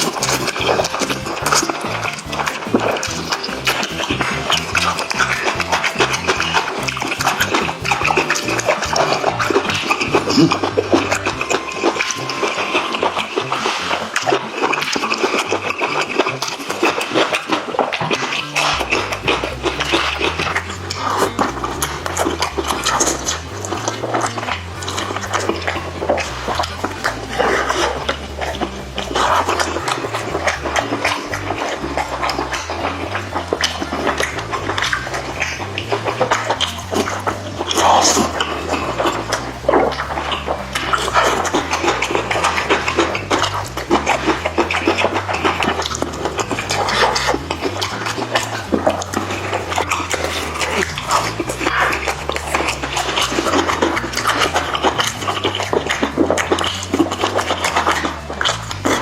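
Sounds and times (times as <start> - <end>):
chewing and lip-smacking: 0.0 - 59.0
low bass line: 0.0 - 59.0.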